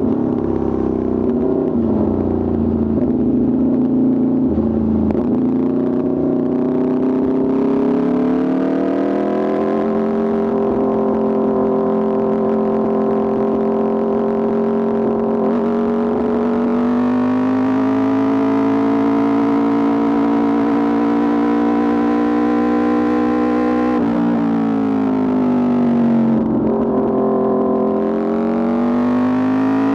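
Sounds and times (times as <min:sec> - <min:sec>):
motorcycle engine revving high: 0:00.0 - 0:29.9.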